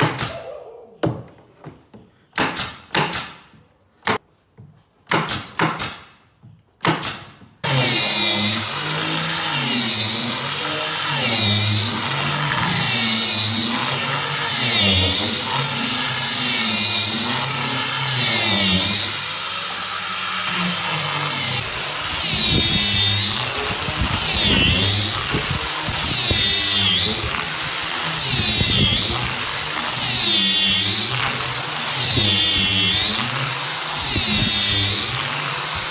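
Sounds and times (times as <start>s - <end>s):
power tool running under load: 7.6s - 35.9s.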